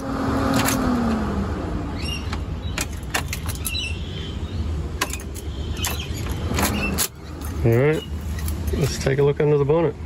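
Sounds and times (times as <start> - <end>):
sharp clicks and knocks: 2.3 - 3.8.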